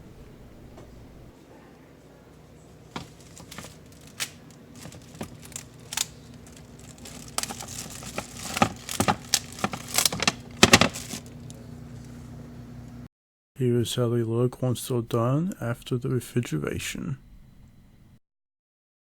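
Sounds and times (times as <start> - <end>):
wrapping crinkling and rustling: 2.4 - 12.4.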